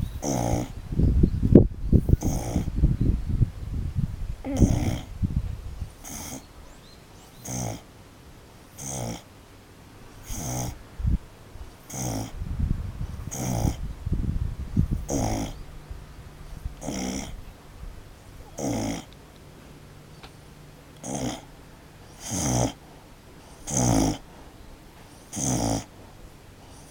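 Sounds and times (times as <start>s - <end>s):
pet snoring loudly: 0.0s - 0.8s, 2.0s - 2.8s, 4.4s - 5.2s, 5.8s - 6.5s, 7.3s - 7.9s, 8.7s - 9.3s, 10.2s - 10.8s, 11.8s - 12.4s, 13.0s - 13.9s, 14.8s - 15.7s, 16.5s - 17.6s, 18.4s - 19.2s, 21.0s - 24.4s, 25.1s - 26.0s, 26.6s - 26.9s.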